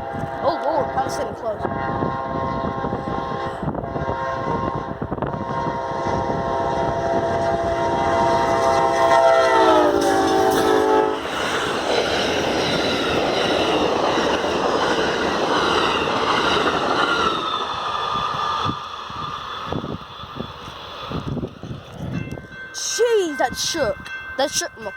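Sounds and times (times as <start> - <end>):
train air horn chord: 0.0 - 11.3
train wheel and rail noise: 0.0 - 24.9.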